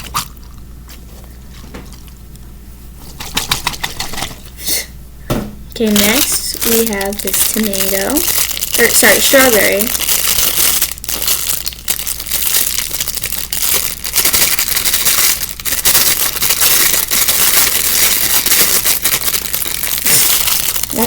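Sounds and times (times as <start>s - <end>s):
plastic bag crinkling: 5.8s - 21.0s.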